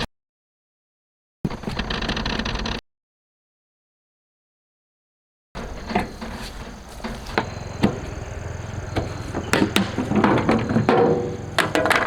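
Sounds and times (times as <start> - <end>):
sharp knocks and clatter: 5.6 - 12.0.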